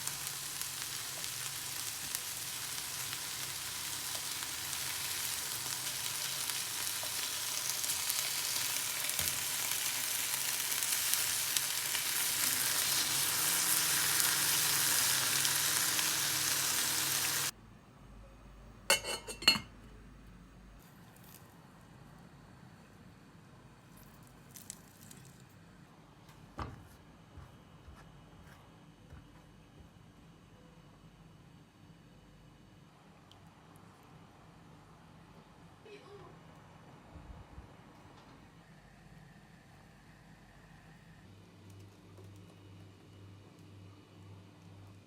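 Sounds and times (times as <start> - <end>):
food sizzling in a pan: 0.0 - 17.5.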